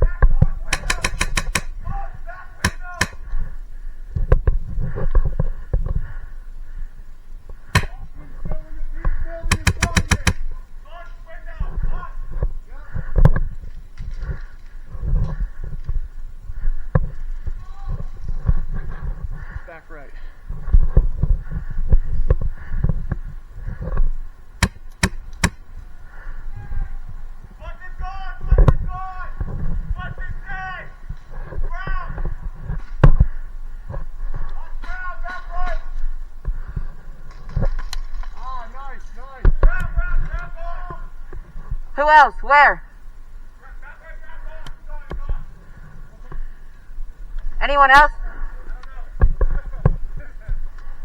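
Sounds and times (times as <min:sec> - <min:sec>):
wind: 0:00.0 - 0:51.0
airsoft gun shots: 0:00.7 - 0:01.8, 0:02.6 - 0:03.4, 0:07.8 - 0:08.3, 0:09.5 - 0:10.6, 0:24.6 - 0:25.6.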